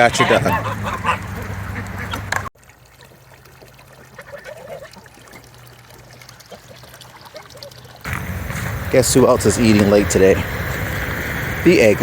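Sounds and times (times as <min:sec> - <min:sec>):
geese and ducks honking: 0:00.0 - 0:02.5.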